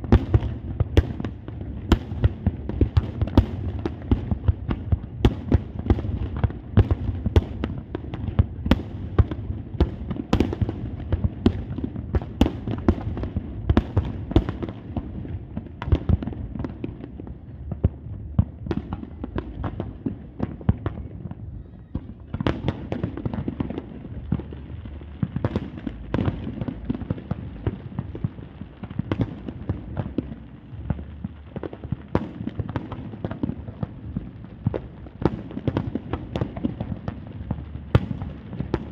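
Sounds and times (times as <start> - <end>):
fireworks bangs and crackles: 0.0 - 38.9
low rumble: 37.0 - 38.9.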